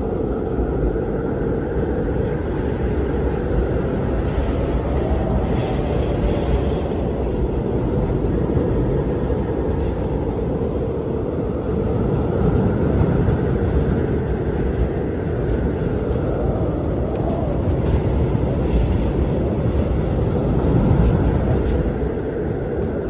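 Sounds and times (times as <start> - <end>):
high wind whistle: 0.0 - 23.0
wind howling: 0.0 - 23.0.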